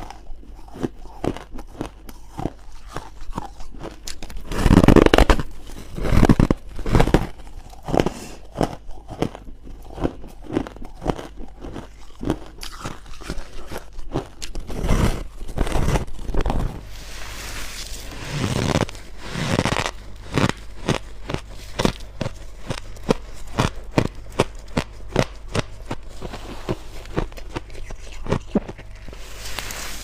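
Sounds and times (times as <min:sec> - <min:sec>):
chewing crunchy ice: 0:00.0 - 0:16.9, 0:17.8 - 0:30.0.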